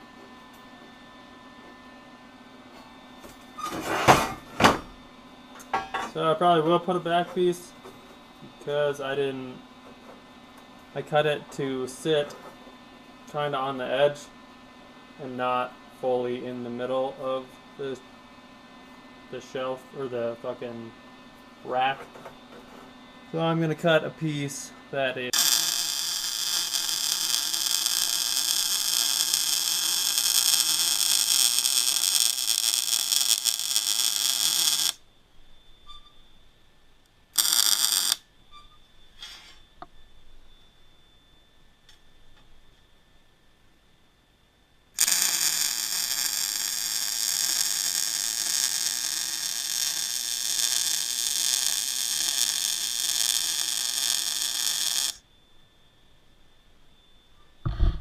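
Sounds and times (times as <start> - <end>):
welding arc hissing and buzzing: 23.3 - 35.0, 37.4 - 38.2, 45.0 - 55.2
power tool cutting steel: 25.4 - 35.0, 45.0 - 55.2.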